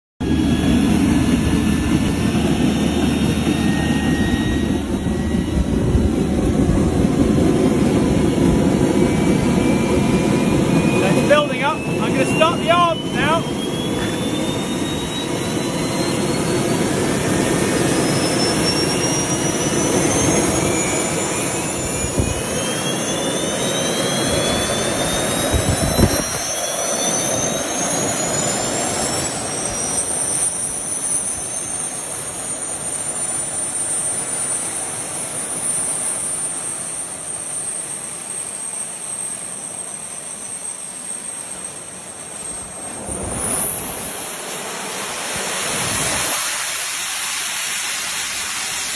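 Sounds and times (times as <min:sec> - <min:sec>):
heavy low rumble: 0:00.2 - 0:14.7
jet turbines whining: 0:00.2 - 0:48.9.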